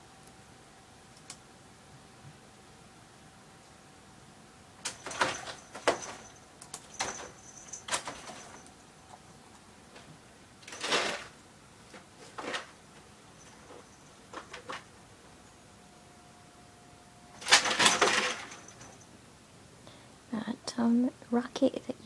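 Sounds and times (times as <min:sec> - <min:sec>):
rabbit rattling cage: 0:04.8 - 0:09.2, 0:09.9 - 0:15.5, 0:17.3 - 0:19.1.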